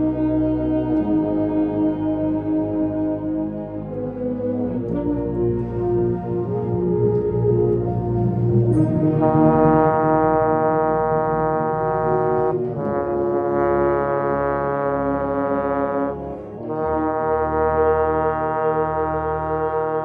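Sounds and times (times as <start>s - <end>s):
trombone long held notes: 0.0s - 20.0s.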